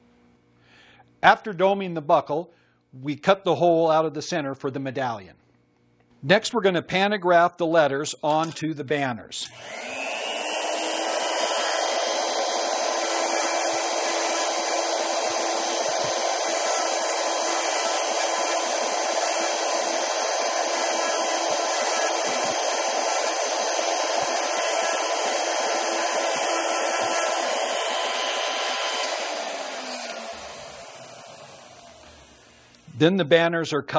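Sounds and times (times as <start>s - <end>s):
engraving machine motor running: 9.5s - 32.7s.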